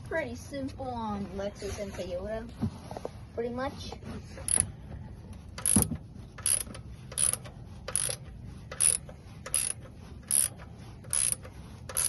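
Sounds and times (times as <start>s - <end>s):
socket ratchet clicking: 4.5s - 4.7s, 5.6s - 12.0s.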